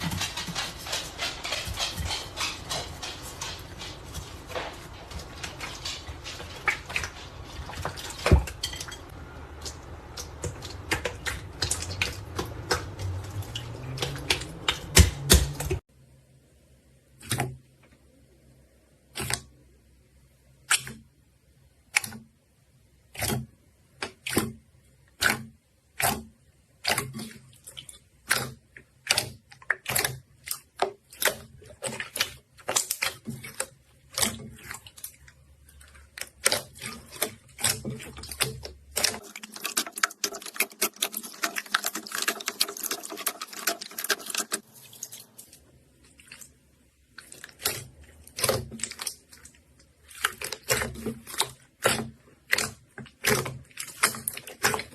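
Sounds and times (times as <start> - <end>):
slime crackling: 28.2 - 54.9.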